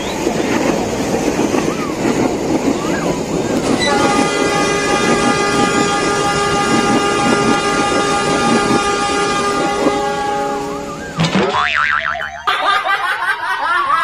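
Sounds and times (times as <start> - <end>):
moving train rumble and clatter: 0.0 - 11.6
multi-tone train horn: 3.6 - 11.2.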